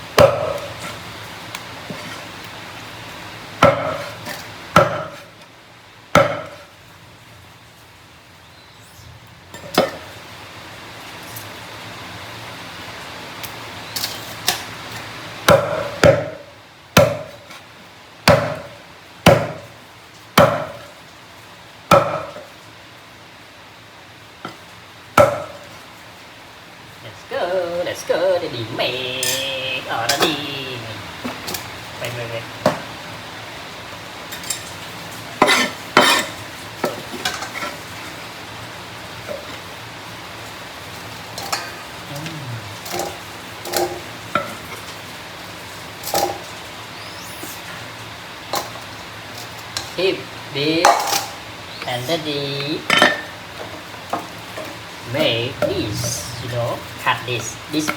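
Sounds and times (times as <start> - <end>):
food sizzling: 0.0 - 57.9
knife chopping on wooden board: 0.2 - 0.7, 3.6 - 4.2, 4.8 - 5.2, 6.2 - 6.6, 17.0 - 17.4, 18.3 - 18.7, 19.3 - 19.7, 20.4 - 20.8
utensil scraping a pan: 35.3 - 38.2.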